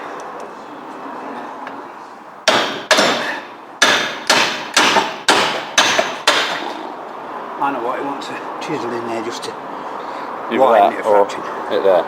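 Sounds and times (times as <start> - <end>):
hammer striking steel: 2.4 - 6.8.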